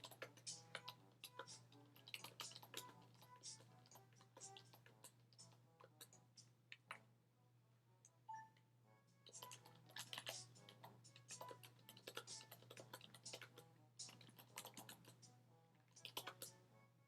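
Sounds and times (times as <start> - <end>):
faint music: 0.0 - 17.0
computer keyboard typing: 9.3 - 13.5.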